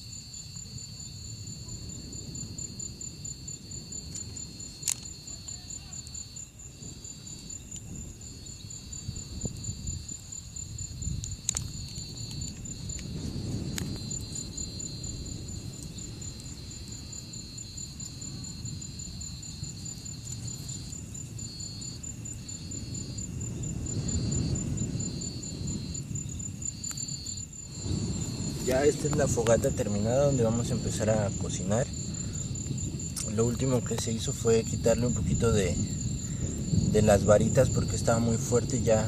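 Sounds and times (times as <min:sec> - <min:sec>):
cricket high pulsing trill: 0:00.0 - 0:39.0
lower cricket song in phrases: 0:00.0 - 0:39.0
low rushing rumble: 0:27.6 - 0:39.0.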